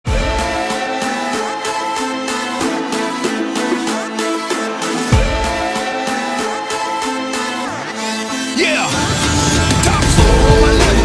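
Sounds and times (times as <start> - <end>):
sweeping effect: 2.3 - 6.3.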